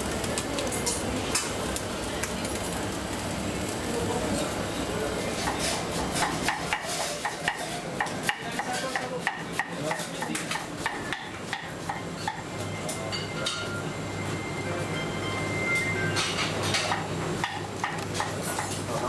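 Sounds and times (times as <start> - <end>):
utensils clinking against pans: 0.3 - 1.6, 5.2 - 14.4, 15.0 - 19.0.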